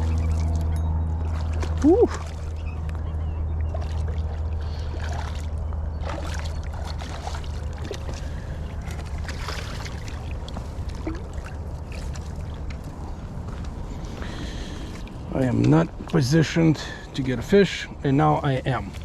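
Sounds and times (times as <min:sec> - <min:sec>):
short splashes: 0:00.0 - 0:03.0, 0:03.6 - 0:13.0
river water moving: 0:00.0 - 0:19.0.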